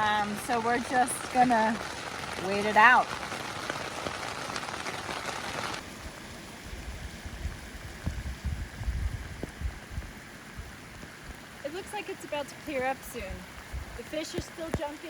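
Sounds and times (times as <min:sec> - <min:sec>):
raindrop ticks: 0:00.0 - 0:05.8, 0:09.4 - 0:15.0
rain falling: 0:00.0 - 0:15.0.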